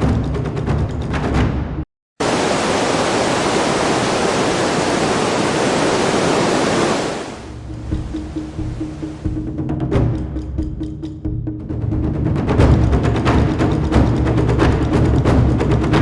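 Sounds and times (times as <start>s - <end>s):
percussive music: 0.0s - 1.8s, 7.5s - 16.0s
loud rushing hiss: 2.2s - 7.6s.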